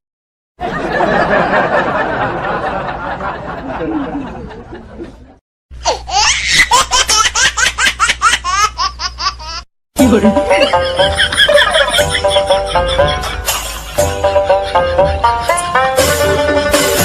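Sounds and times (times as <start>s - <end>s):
crowd laughing: 0.6s - 5.4s, 10.1s - 17.0s
person's high-pitched laugh: 10.4s - 17.0s.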